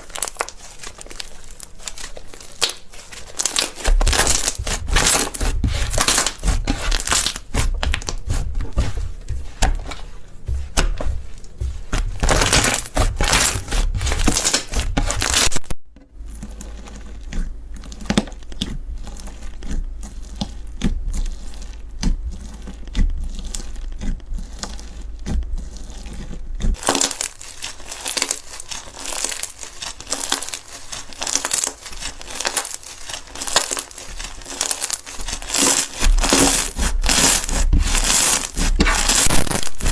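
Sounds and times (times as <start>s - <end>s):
slime crackling when squeezed: 0.0s - 8.2s, 12.2s - 15.7s, 26.8s - 39.9s.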